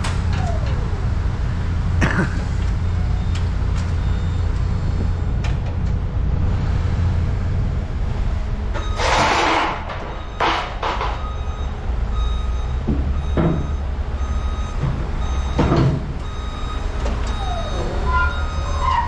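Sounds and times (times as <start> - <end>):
heavy engine idling: 0.0 - 19.0
falling squeal: 8.8 - 11.4, 17.3 - 19.0.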